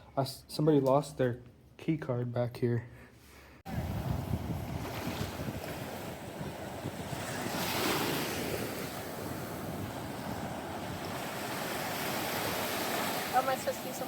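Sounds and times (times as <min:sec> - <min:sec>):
wind buffeting microphone: 0:03.7 - 0:13.1
ocean surf washing in: 0:03.7 - 0:14.0.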